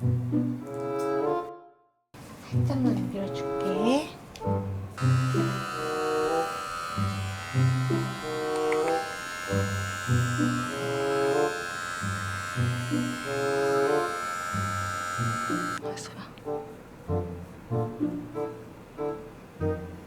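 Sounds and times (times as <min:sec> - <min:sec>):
background music: 0:00.0 - 0:01.8, 0:02.4 - 0:20.0
electric hair clipper buzzing: 0:05.0 - 0:15.8.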